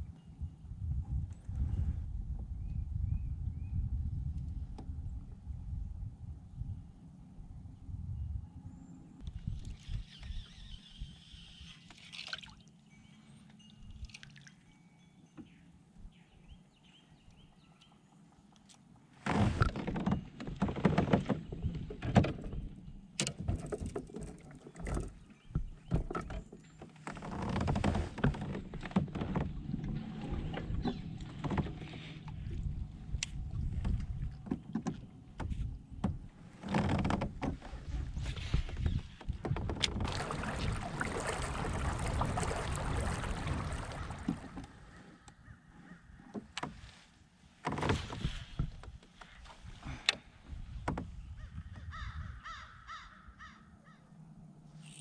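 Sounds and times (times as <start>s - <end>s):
kayak hull and gear knocking: 19.3s - 32.6s, 33.2s - 45.1s
water sloshing: 36.3s - 45.3s.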